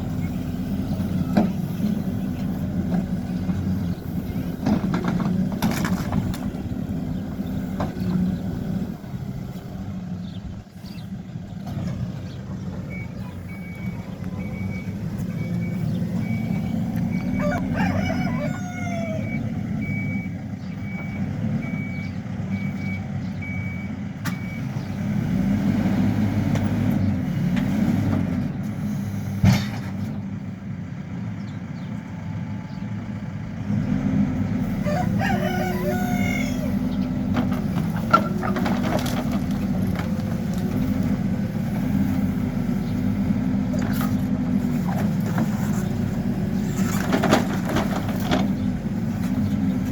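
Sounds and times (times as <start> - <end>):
diesel engine running: 0.0 - 49.9
reversing alarm beeping: 12.9 - 17.8, 19.2 - 24.7
rooster crowing: 17.1 - 19.5, 34.7 - 37.0.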